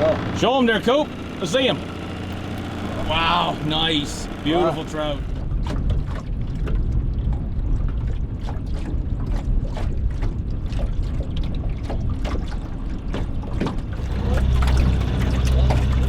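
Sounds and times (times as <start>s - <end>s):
water lapping against boat hull: 0.0s - 16.0s
wind buffeting microphone: 2.9s - 16.0s
light knocks and splashes: 4.2s - 16.0s.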